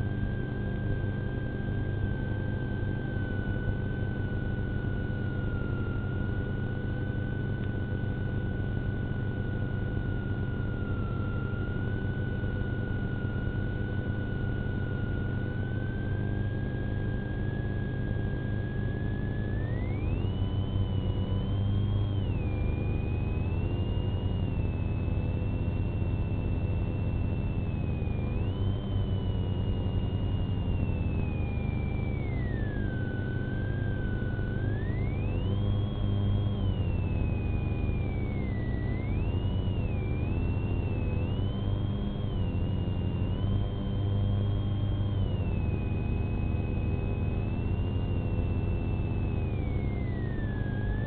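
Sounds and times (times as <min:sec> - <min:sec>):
high-pitched whine: 0:00.0 - 0:51.0
siren wailing: 0:19.5 - 0:51.0.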